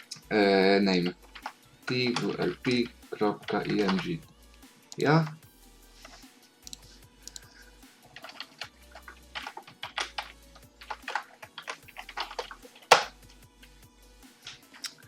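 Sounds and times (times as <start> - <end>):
typing on computer keyboard: 8.1 - 13.1.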